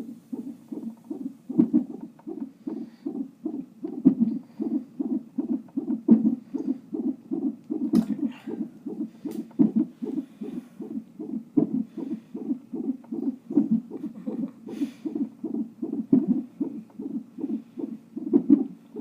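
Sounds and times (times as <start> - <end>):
fetal heartbeat whooshing pulses: 0.0 - 19.0.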